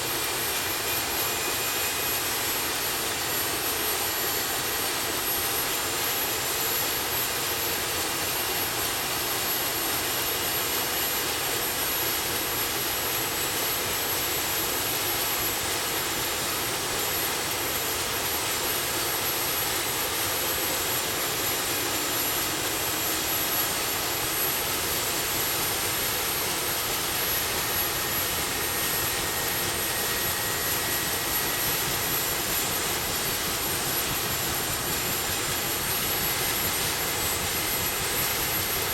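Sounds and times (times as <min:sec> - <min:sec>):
helicopter turbine engines running: 0:00.0 - 0:38.9.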